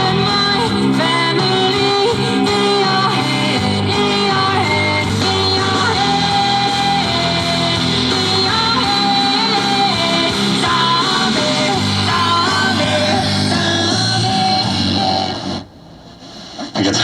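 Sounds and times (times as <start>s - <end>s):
rock-pop song on radio: 0.0s - 17.0s.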